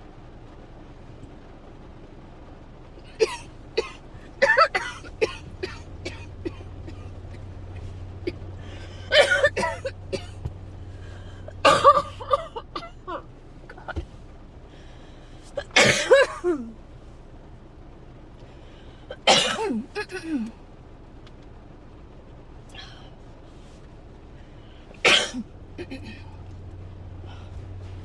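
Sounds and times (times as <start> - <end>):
person coughing: 3.1 - 14.1, 15.6 - 16.8, 19.1 - 20.6, 25.0 - 26.4, 27.2 - 28.0.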